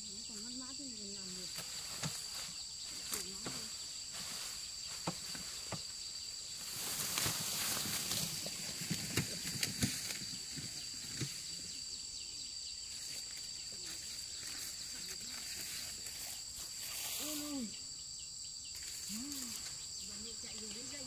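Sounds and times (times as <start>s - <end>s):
insects chirring: 0.0s - 21.0s
soft knocks and rustles: 1.6s - 6.0s.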